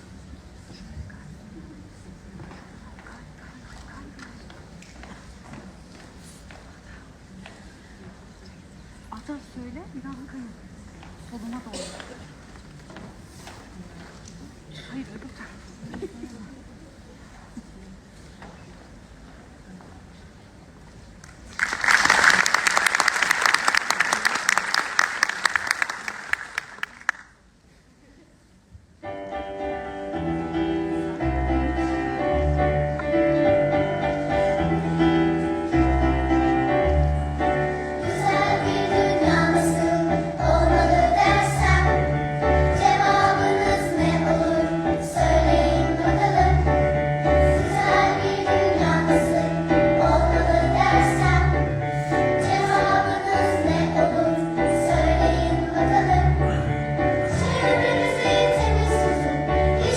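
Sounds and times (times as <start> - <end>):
people clapping: 21.2 - 27.4
choir singing: 30.1 - 59.9.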